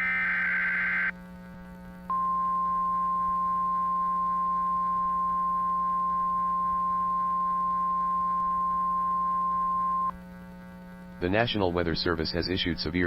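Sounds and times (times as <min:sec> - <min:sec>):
steady pure alarm tone: 0:00.0 - 0:01.1, 0:02.1 - 0:10.1
low steady hum: 0:00.0 - 0:13.0.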